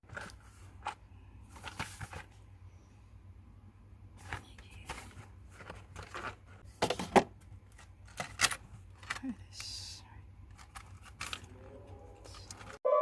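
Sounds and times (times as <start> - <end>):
low steady hum: 0.0 - 12.8
packaging rustling: 0.1 - 2.3, 4.3 - 9.3, 10.5 - 12.8.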